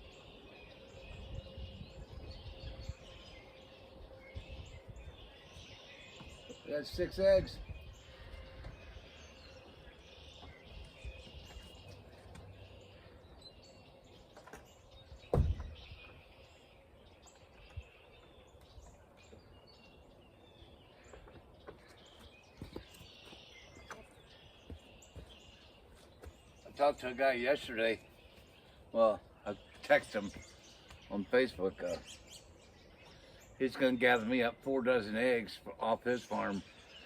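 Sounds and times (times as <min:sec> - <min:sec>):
birds chirping: 0:00.0 - 0:37.0
loud thump: 0:15.3 - 0:15.8.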